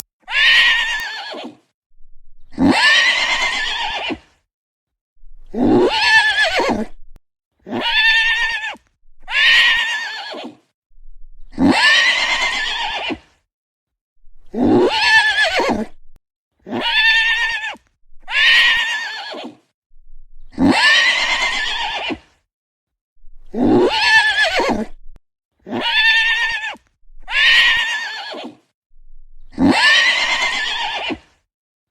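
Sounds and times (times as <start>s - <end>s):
horse neighing: 0.3s - 1.6s, 2.6s - 4.2s, 5.6s - 6.9s, 7.7s - 10.6s, 11.6s - 13.2s, 14.6s - 16.0s, 20.6s - 22.2s, 23.5s - 25.0s, 25.7s - 26.7s, 27.3s - 28.6s, 29.6s - 31.2s.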